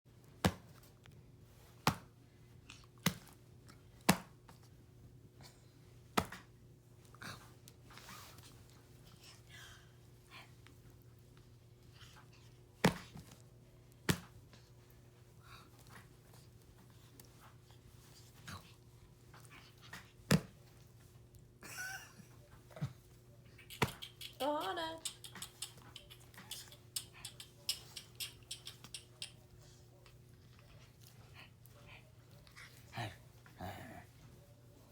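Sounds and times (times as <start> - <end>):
faint low hum: 0.1 - 34.9
monkey squeaky call: 23.6 - 29.4
sharp clicks or slaps: 23.7 - 24.4.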